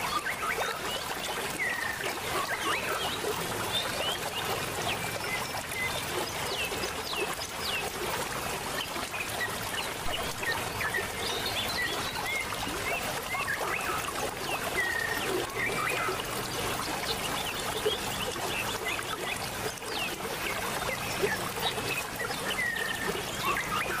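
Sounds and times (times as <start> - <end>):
birds chirping and whistling: 9.4 - 16.2, 20.9 - 24.0.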